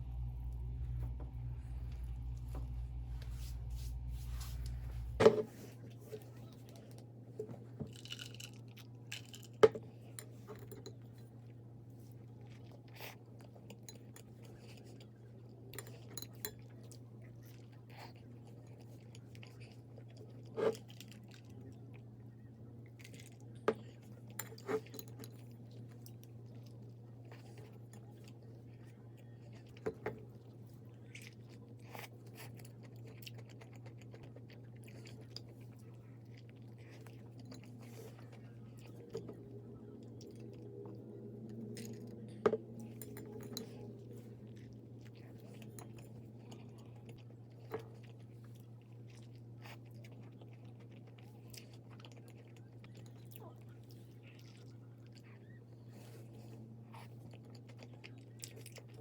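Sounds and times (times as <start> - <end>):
steady low hum: 0.0 - 7.5, 34.0 - 49.8
person chewing and crunching food: 0.0 - 59.0.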